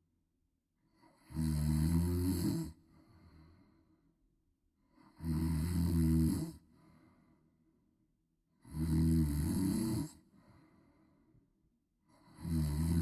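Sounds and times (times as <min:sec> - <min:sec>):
faint breath: 0:02.8 - 0:04.2, 0:06.6 - 0:07.8, 0:10.2 - 0:12.4.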